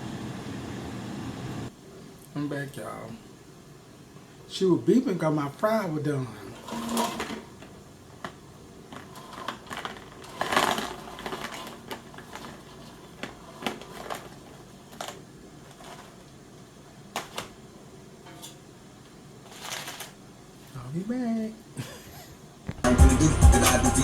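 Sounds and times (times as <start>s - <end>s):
rustling: 6.3s - 16.4s, 17.0s - 21.0s.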